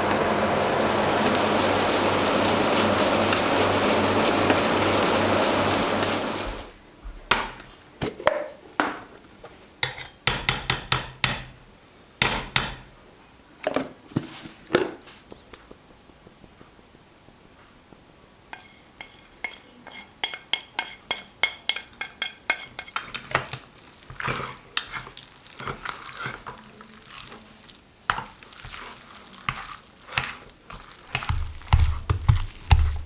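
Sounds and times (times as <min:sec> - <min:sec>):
hard objects knocking: 0:31.2 - 0:33.0.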